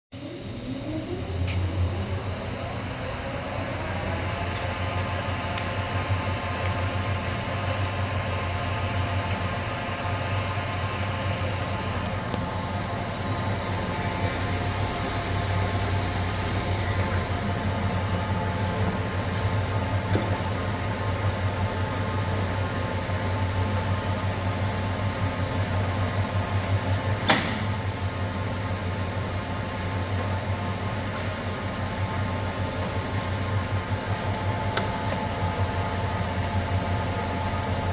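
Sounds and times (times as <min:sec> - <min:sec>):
lathe motor humming and whining: 0:00.2 - 0:37.9
sharp click: 0:27.2 - 0:27.8.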